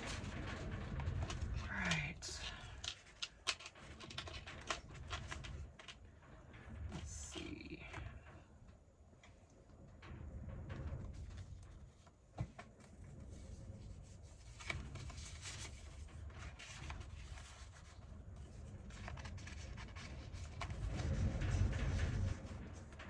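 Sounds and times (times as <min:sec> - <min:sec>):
paper rustling on tabletop: 0:12.0 - 0:22.5.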